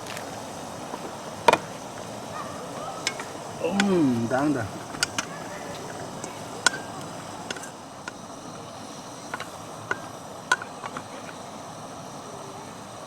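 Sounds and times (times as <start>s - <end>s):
steady background hiss: 0.0s - 13.0s.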